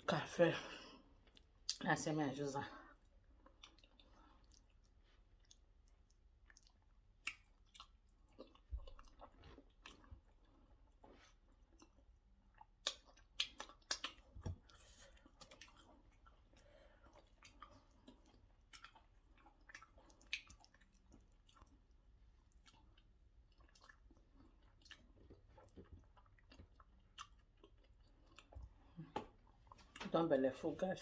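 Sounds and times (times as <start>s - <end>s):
chewing mouth clicks and smacks: 3.0s - 30.0s.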